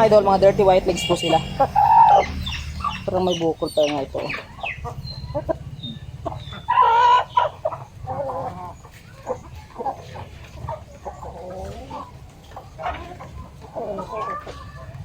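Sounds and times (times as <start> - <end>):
steady low hum: 0.0 - 11.4
chickens clucking: 0.0 - 15.0.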